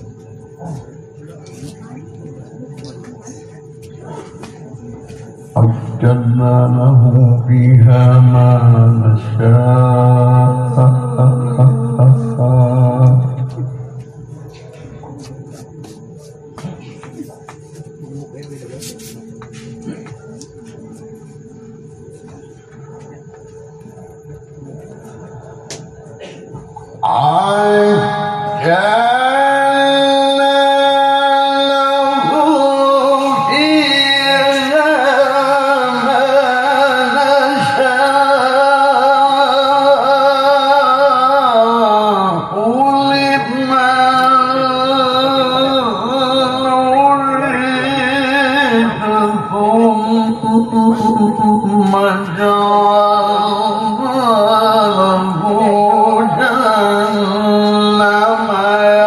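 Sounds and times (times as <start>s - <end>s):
man reciting melismatically: 5.6s - 13.7s, 27.0s - 59.0s.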